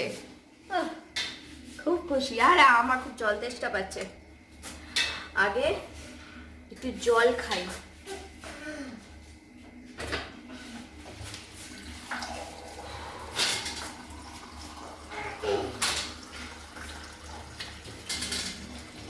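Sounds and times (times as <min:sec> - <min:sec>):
water pouring into a glass: 0:11.8 - 0:19.0.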